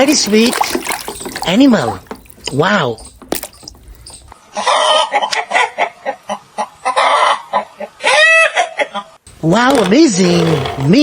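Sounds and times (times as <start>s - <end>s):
chicken clucking: 2.9s - 9.2s
chicken squawk: 4.0s - 9.2s.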